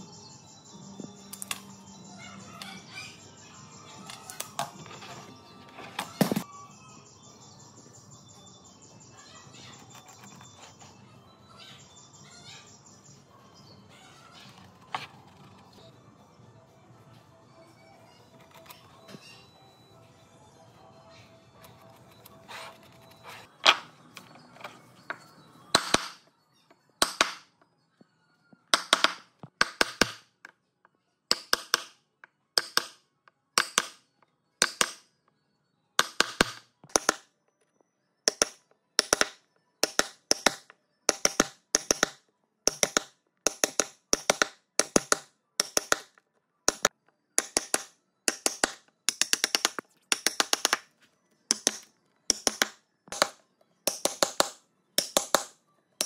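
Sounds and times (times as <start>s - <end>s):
hammering on wood: 27.0s - 27.5s, 28.7s - 30.3s, 31.3s - 32.0s, 32.6s - 33.0s, 33.6s - 34.0s, 34.6s - 35.0s, 36.0s - 37.2s, 38.3s - 50.8s, 51.5s - 55.6s.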